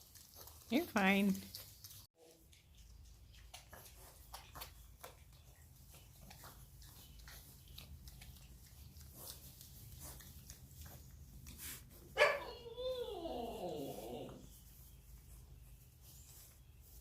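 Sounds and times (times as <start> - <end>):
piglets chewing food: 0.0 - 12.8, 13.5 - 17.0.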